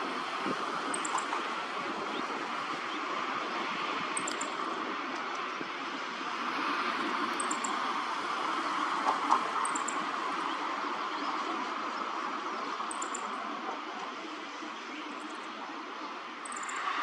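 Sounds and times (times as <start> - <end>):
distant road traffic rushing: 0.0 - 17.0
small bird chirping: 0.9 - 1.3, 16.4 - 16.9.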